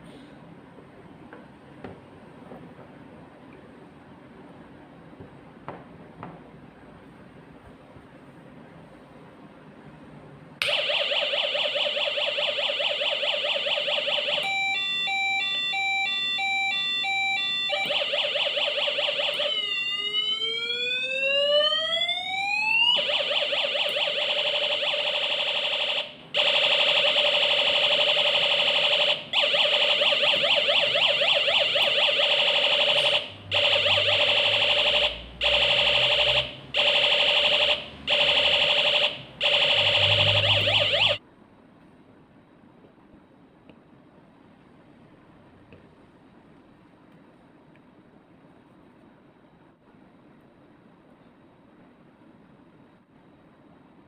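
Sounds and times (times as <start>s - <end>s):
electronic siren through small speaker: 10.6s - 41.2s.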